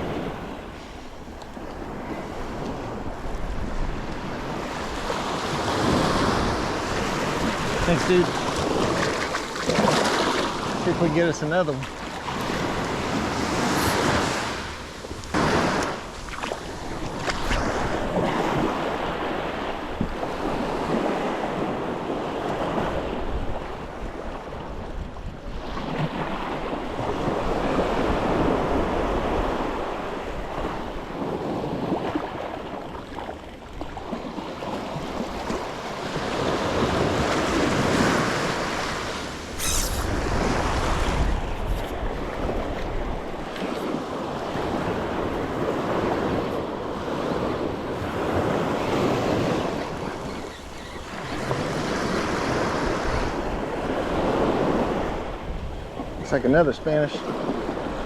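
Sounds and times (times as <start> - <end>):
surf breaking on a beach: 0.0 - 58.0
wind buffeting microphone: 12.2 - 56.2.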